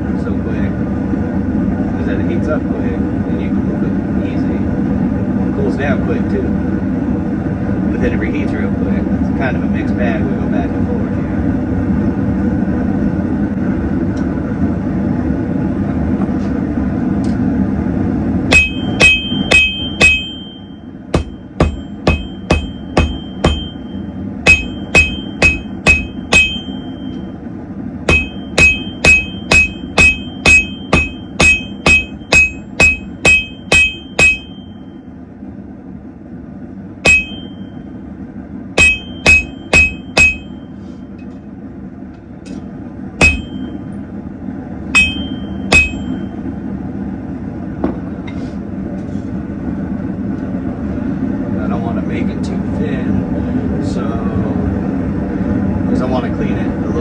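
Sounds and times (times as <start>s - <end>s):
hammer striking steel on anvil: 18.5s - 27.3s, 28.1s - 34.9s, 37.1s - 37.8s, 38.8s - 40.7s, 43.2s - 43.8s, 45.0s - 46.4s
forge noise: 18.5s - 35.0s, 37.0s - 38.0s, 38.8s - 40.7s, 43.2s - 43.9s, 45.0s - 46.5s.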